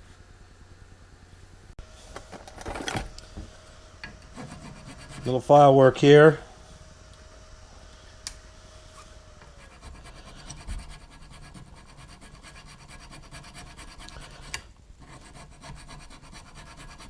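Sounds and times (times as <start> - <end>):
faint steady hum: 0.0 - 17.0
hand file rasping: 4.3 - 5.3, 9.6 - 17.0.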